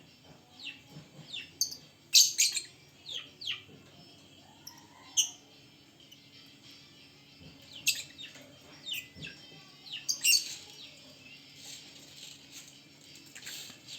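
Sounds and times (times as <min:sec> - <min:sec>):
shrill bird chirps: 0:01.4 - 0:03.6, 0:07.7 - 0:09.1.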